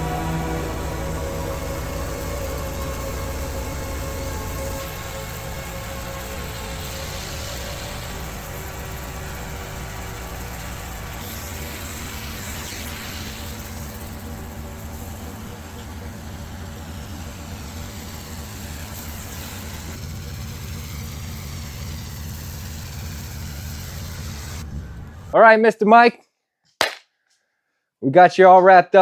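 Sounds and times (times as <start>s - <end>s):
pressure washer engine running: 0.0s - 25.3s.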